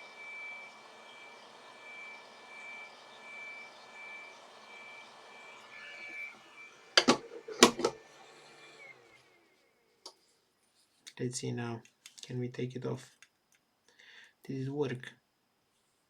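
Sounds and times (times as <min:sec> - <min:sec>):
hot air station blowing: 0:00.0 - 0:09.5.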